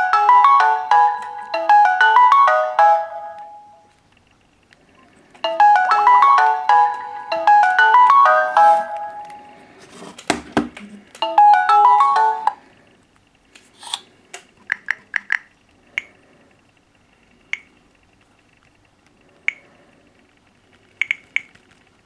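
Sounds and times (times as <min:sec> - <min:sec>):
melodic phone ringtone: 0:00.0 - 0:03.9, 0:05.4 - 0:09.8, 0:11.2 - 0:12.7
light clicks: 0:13.9 - 0:20.0.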